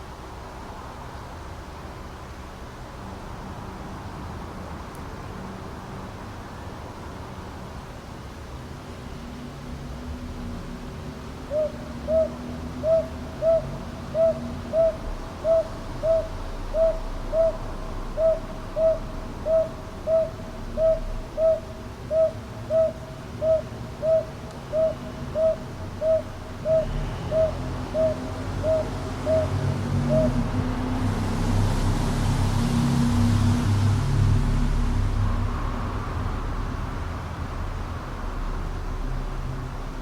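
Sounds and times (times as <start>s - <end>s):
owl hooting: 11.5s - 30.5s.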